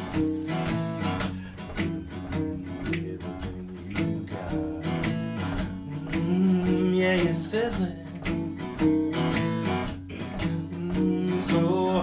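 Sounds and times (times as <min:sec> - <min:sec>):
person singing: 0:00.0 - 0:08.2, 0:10.6 - 0:12.0
acoustic guitar strumming: 0:00.0 - 0:12.0.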